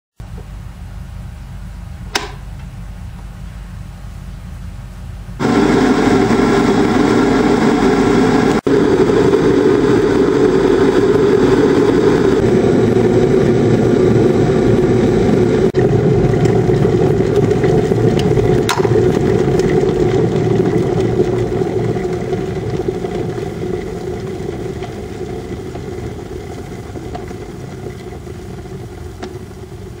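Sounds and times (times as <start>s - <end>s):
switch click: 2.1s - 2.5s
water boiling hiss: 5.4s - 30.0s.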